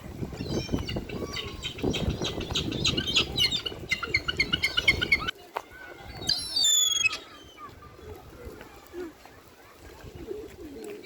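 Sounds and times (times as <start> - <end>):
gulls and ducks calling: 0.4 - 5.3.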